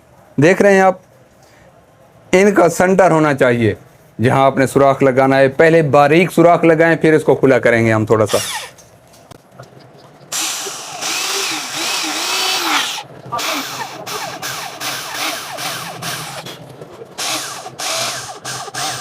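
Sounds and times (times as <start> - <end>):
electric drill boring: 8.3 - 8.8, 10.3 - 16.6, 17.2 - 19.0.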